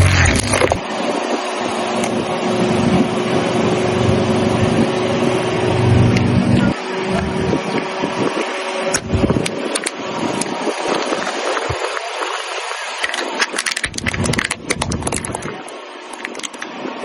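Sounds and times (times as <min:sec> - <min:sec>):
tire crushing objects: 0:00.0 - 0:00.8, 0:12.9 - 0:15.5
car engine running low: 0:00.0 - 0:00.9, 0:01.8 - 0:12.8, 0:13.8 - 0:16.2.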